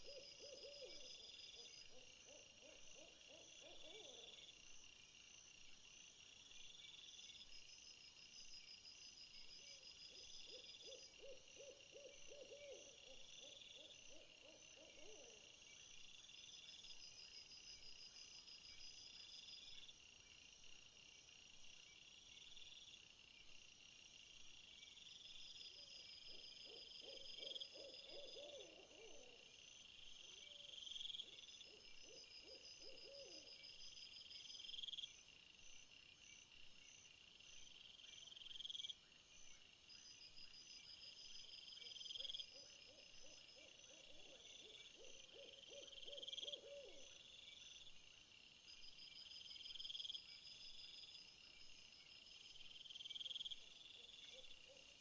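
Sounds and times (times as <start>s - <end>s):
insects chirping with rising trill: 23.8s - 55.0s.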